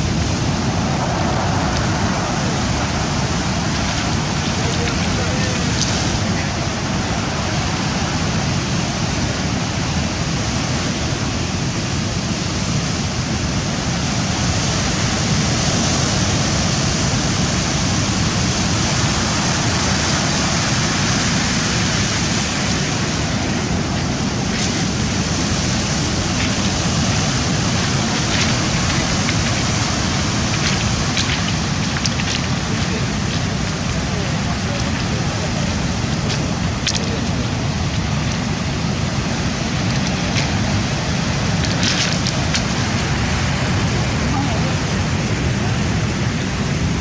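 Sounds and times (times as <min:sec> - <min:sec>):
sea surf breaking: 0:00.0 - 0:47.0
faint clicks: 0:26.2 - 0:38.7, 0:39.7 - 0:43.2.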